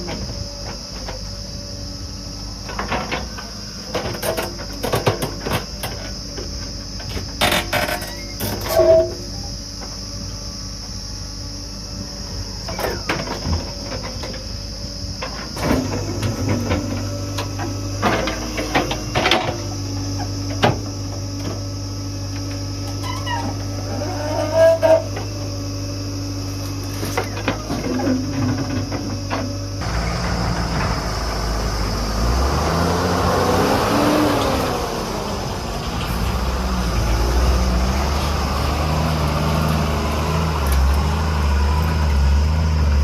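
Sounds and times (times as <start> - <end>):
high-pitched insect chirring: 0.2 - 15.5
low engine hum: 9.2 - 43.0.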